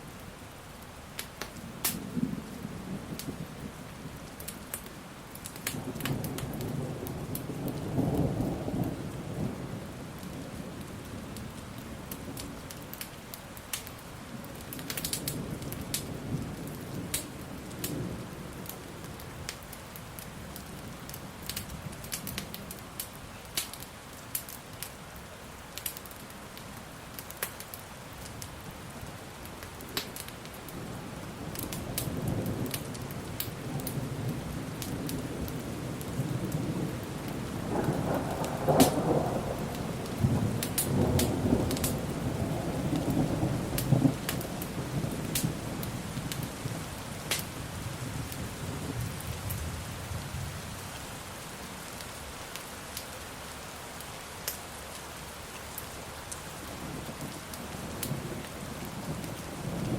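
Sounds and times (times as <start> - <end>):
steady rain: 0.0 - 59.9
log fire crackling: 0.1 - 3.5, 4.2 - 9.6, 10.2 - 59.9
low thunder rumbling: 30.7 - 50.9, 56.7 - 59.9.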